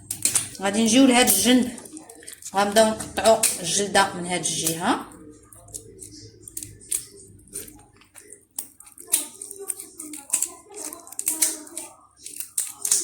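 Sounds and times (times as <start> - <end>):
lobster shell snipping and cracking: 0.0 - 0.6, 5.6 - 13.0.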